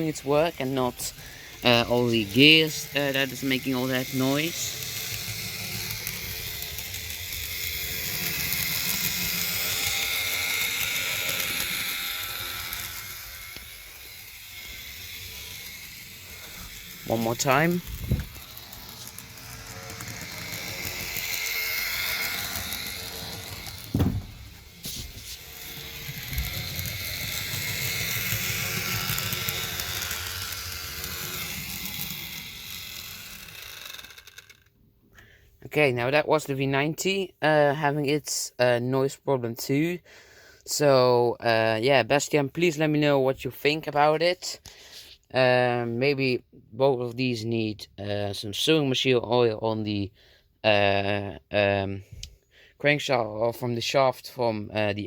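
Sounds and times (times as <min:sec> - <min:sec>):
model locomotive motor whine: 0:00.0 - 0:36.2.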